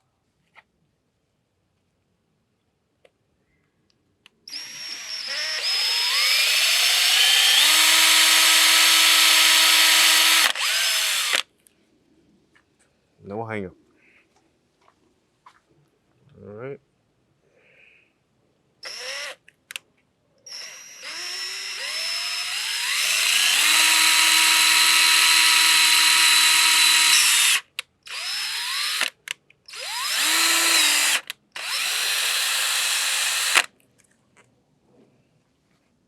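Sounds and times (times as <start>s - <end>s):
power drill motor whine: 4.5s - 11.4s, 18.8s - 19.4s, 20.5s - 33.7s.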